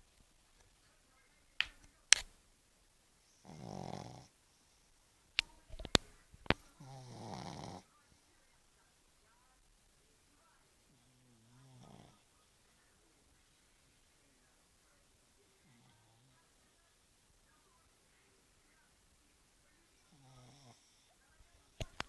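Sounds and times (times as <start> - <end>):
sharp clicks: 1.6 - 2.4, 5.4 - 6.7, 21.8 - 22.0
dog snoring: 3.3 - 4.7, 6.8 - 7.9, 11.3 - 12.2, 20.0 - 21.1.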